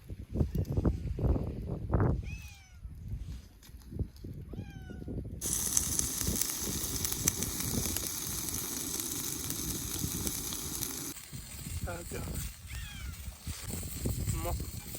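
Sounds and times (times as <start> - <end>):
food sizzling in a pan: 5.4 - 14.9.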